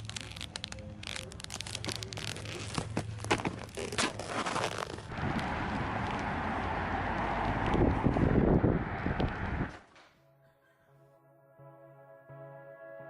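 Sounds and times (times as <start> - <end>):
rustling handling noise: 0.0 - 6.3
steady rushing noise: 5.1 - 9.8.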